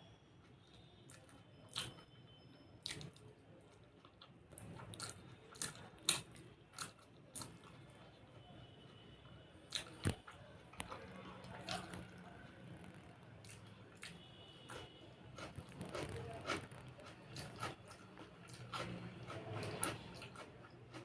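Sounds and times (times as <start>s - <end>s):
person chewing food: 2.8s - 8.1s, 9.7s - 21.0s.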